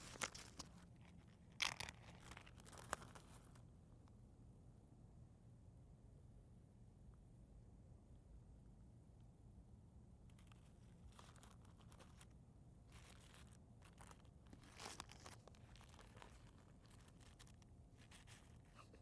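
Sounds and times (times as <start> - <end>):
faint crinkling and rustling: 0.0 - 3.7, 10.2 - 19.0.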